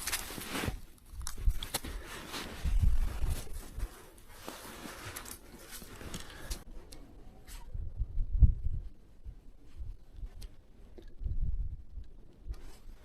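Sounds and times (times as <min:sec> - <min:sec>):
handling clicks and rustling: 0:00.0 - 0:07.0
muffled low thumping: 0:07.8 - 0:10.0.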